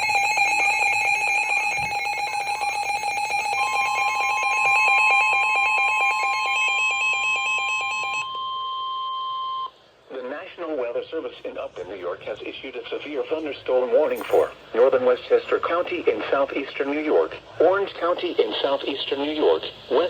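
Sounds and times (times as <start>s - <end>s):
rapidly pulsing electronic alarm: 0.0s - 9.7s
steady high alarm tone: 0.0s - 9.8s.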